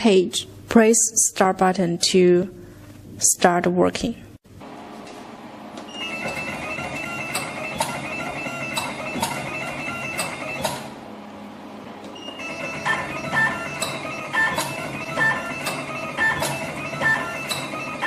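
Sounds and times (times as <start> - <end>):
machine motors whining: 5.7 - 11.2, 11.8 - 18.0
machine sharp clicks: 6.2 - 11.0, 12.5 - 18.0.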